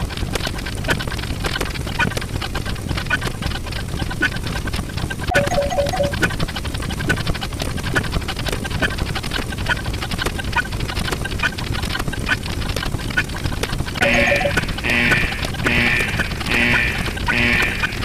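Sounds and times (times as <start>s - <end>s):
short blips and clicks: 5.3s - 6.4s, 14.0s - 18.0s.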